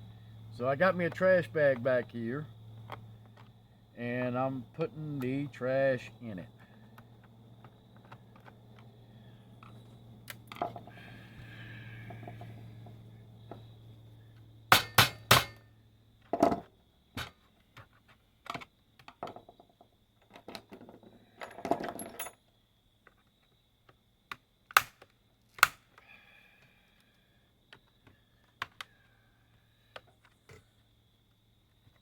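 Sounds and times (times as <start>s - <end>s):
plastic parts clicking and knocking: 6.9s - 8.9s, 16.2s - 22.3s, 27.7s - 30.7s.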